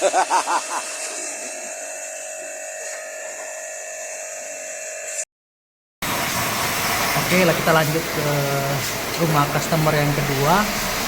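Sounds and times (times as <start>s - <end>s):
small electric motor whining: 0.0s - 5.3s.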